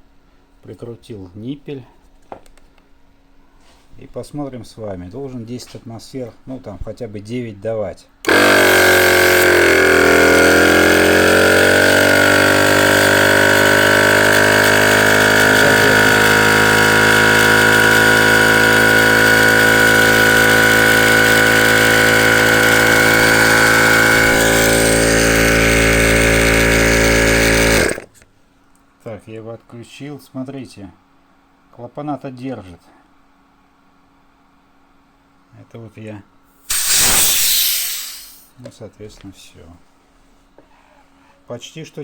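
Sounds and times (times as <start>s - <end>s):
tyre compressor running: 8.2s - 28.1s, 36.7s - 38.5s.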